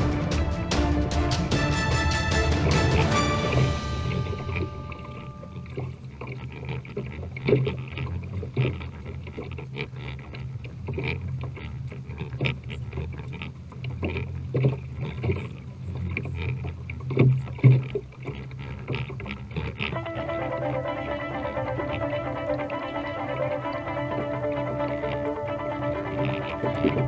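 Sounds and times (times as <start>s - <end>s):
low hum: 0.0s - 6.2s, 20.0s - 27.0s.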